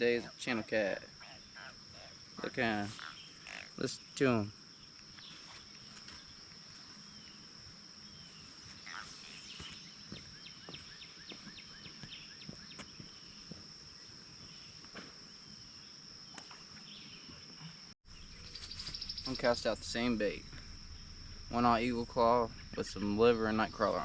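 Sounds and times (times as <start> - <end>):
high insect drone: 0.0 - 24.0.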